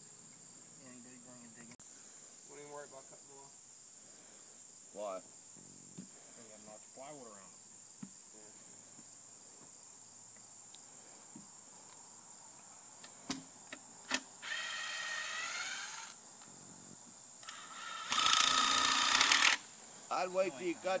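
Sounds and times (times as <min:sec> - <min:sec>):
crickets chirring: 0:00.0 - 0:21.0
power drill running: 0:14.4 - 0:16.2, 0:17.4 - 0:19.6.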